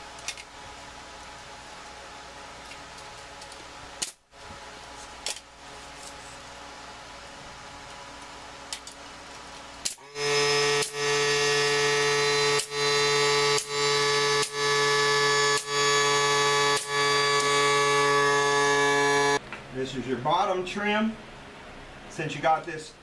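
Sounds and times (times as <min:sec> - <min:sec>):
steady mechanical hum: 0:00.0 - 0:23.0.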